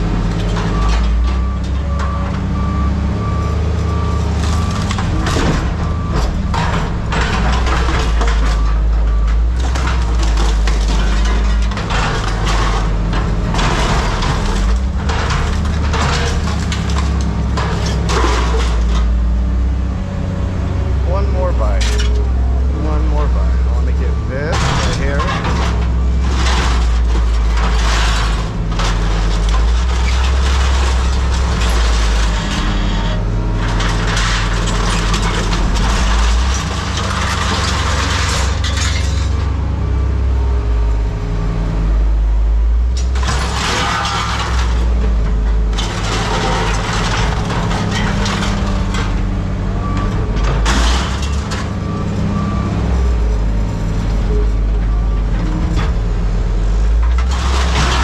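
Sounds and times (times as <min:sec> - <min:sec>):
heavy engine rumbling: 0:00.0 - 0:58.0.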